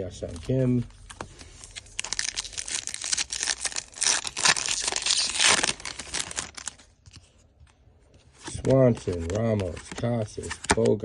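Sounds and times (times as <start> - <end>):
foil wrapper tearing and crinkling: 1.7 - 6.9.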